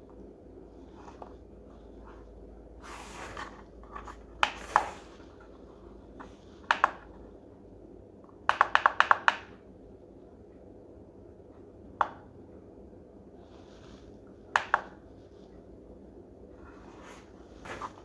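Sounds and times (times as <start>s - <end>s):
handling rub: 16.6s - 18.0s.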